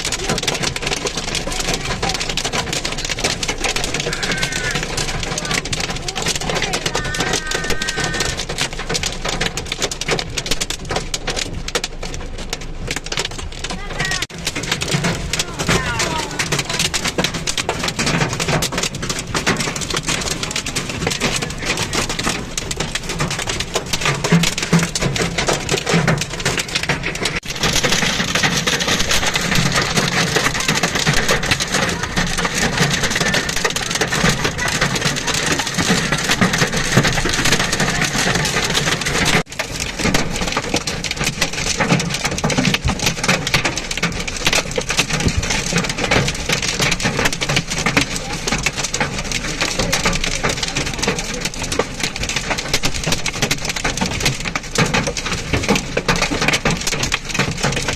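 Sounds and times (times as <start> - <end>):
heavy rain on hard surfaces: 0.0 - 57.9.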